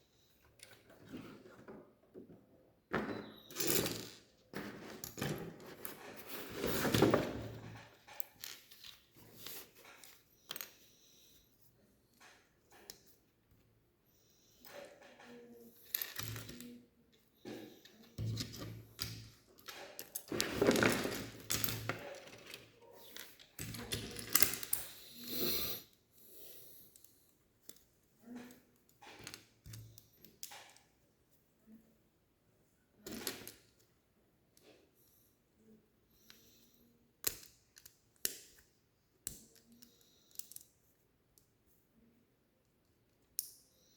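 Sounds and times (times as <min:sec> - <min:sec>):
plastic building pieces clattering: 0:18.2 - 0:24.8.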